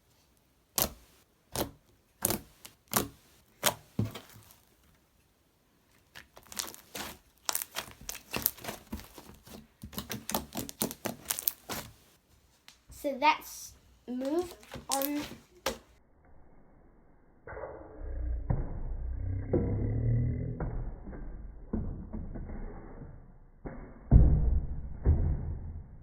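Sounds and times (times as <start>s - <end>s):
slime popping and crackling: 0.7s - 4.8s, 6.0s - 12.1s, 14.2s - 15.8s.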